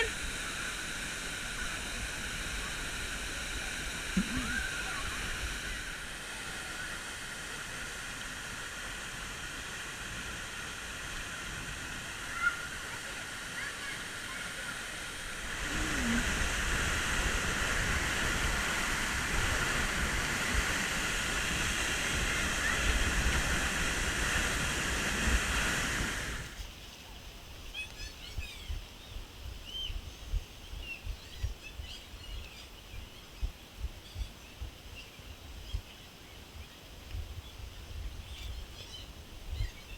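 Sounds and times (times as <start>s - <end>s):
river and waterfall rushing: 0.0s - 26.6s.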